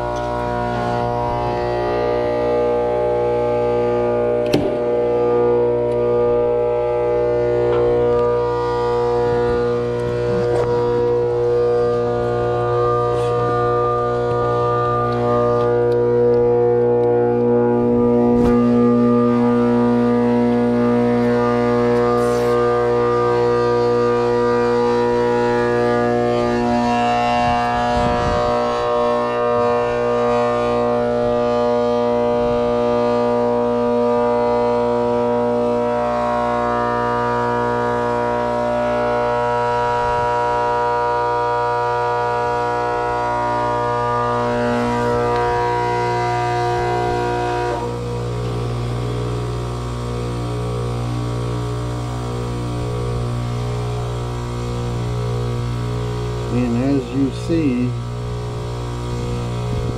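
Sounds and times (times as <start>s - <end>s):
fan motor howling: 0.0s - 59.9s
low motor hum: 0.0s - 59.9s.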